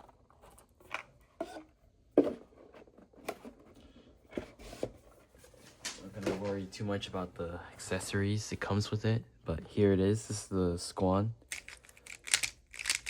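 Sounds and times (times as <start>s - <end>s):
puzzle clicks and light knocks: 11.5s - 13.0s.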